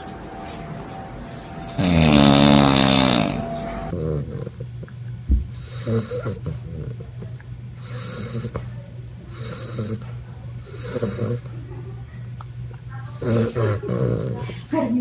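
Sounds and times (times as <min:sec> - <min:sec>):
steady low hum: 0:00.0 - 0:15.0
person snoring: 0:01.6 - 0:04.5.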